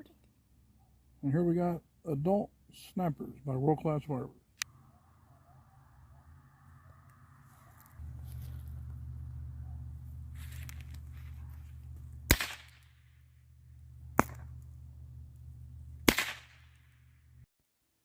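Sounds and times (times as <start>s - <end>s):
steady low hum: 7.0s - 17.5s
snap pops cracking: 12.2s - 13.0s, 14.1s - 16.9s.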